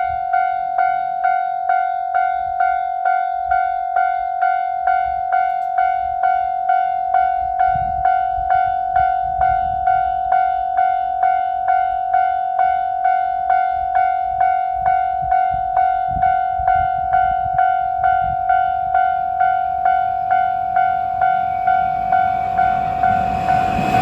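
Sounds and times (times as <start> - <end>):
railroad crossing bell ringing: 0.0 - 24.0
low rumble: 20.2 - 24.0.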